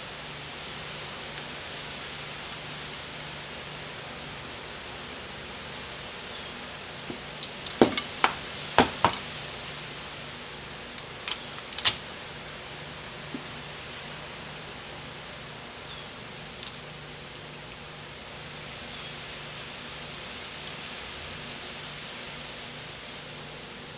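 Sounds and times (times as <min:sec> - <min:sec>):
steady hiss: 0:00.0 - 0:23.9
sharp clicks and taps of metal parts: 0:07.1 - 0:09.3, 0:10.9 - 0:12.0.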